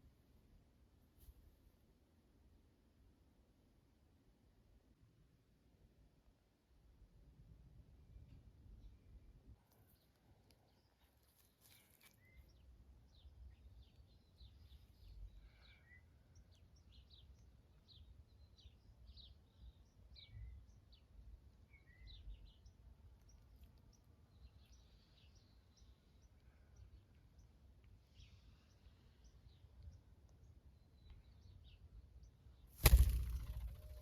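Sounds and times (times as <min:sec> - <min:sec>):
small birds chirping: 0:09.8 - 0:34.0.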